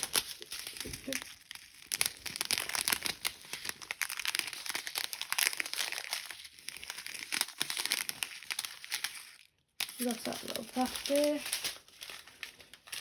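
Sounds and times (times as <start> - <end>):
plastic bags crinkling: 0.0 - 13.0.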